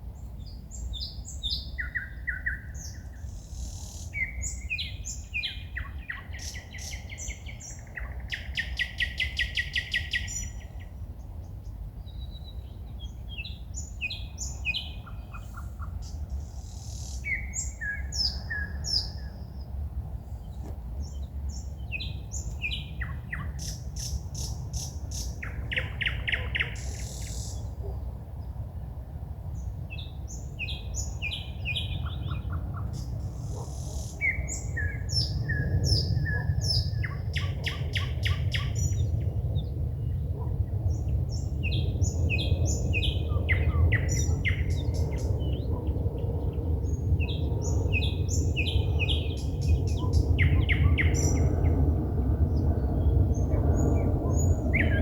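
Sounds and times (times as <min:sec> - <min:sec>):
songbirds singing: 0:00.0 - 0:55.0
steady low rumble: 0:34.4 - 0:55.0.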